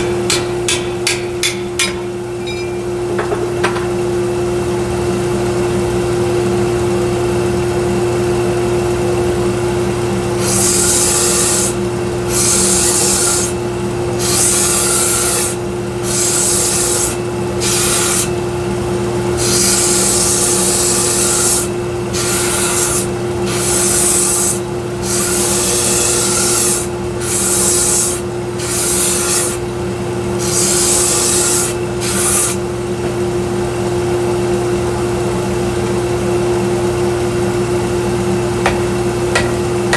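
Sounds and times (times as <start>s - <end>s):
wood grinding on sander belt: 19.4s - 29.6s.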